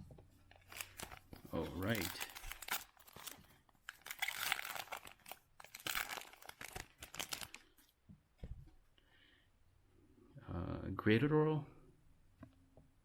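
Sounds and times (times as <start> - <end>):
cards and packaging crinkling: 0.4 - 7.9.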